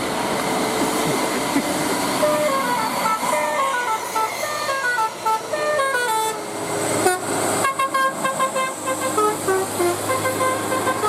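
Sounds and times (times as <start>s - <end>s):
bus engine humming: 0.0s - 11.0s
bus horn playing a tune: 2.2s - 11.0s.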